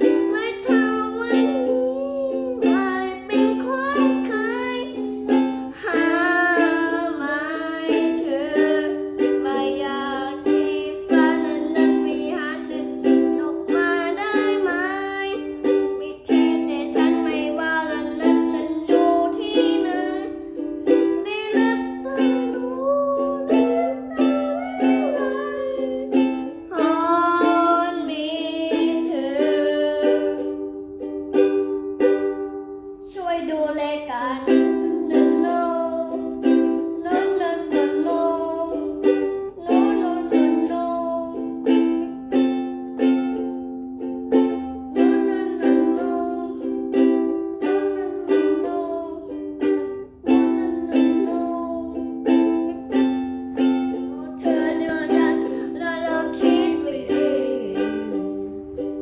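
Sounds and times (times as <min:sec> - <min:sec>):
person singing: 0:00.0 - 0:31.8, 0:33.0 - 0:59.0
strummed plucked strings: 0:34.0 - 0:59.0.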